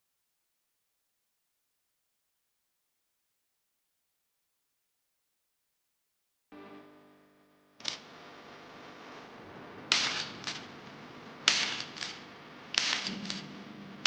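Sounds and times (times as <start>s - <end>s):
sharp clacks: 9.9s - 10.7s, 11.5s - 13.7s.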